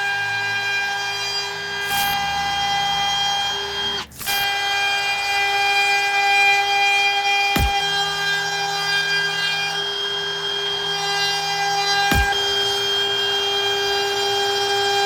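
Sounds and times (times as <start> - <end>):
power carving tool whining: 0.0 - 15.0.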